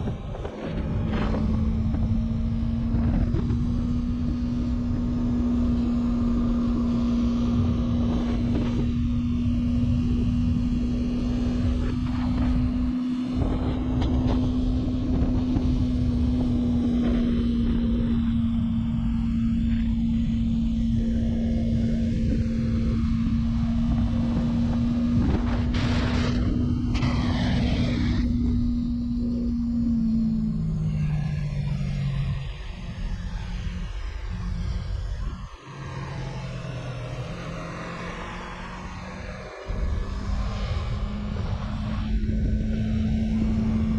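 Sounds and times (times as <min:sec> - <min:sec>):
motorcycle engine cruising: 0:00.0 - 0:43.9
wind buffeting microphone: 0:07.0 - 0:30.7.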